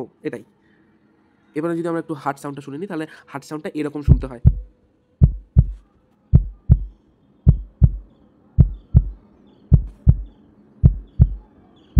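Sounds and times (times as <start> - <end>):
heartbeat thumps: 4.1 - 11.4.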